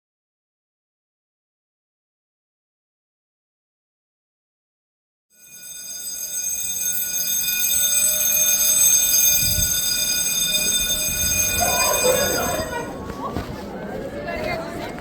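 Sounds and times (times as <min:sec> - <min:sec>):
fire alarm ringing: 0:05.4 - 0:13.0.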